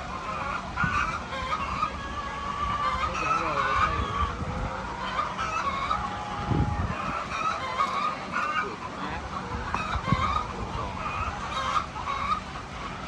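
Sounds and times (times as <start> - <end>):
chickens squawking and clucking: 0.0 - 13.0.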